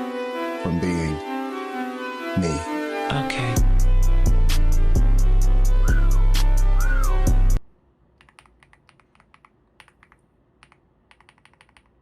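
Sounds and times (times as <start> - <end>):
music with a beat: 3.6 - 7.6
mechanical keyboard typing clicks: 8.2 - 12.0.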